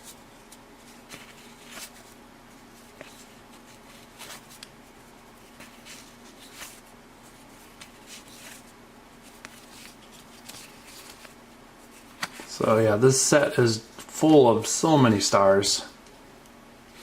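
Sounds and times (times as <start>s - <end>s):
cardboard cards rustling: 0.0s - 12.8s
faint steady hum: 0.0s - 17.0s.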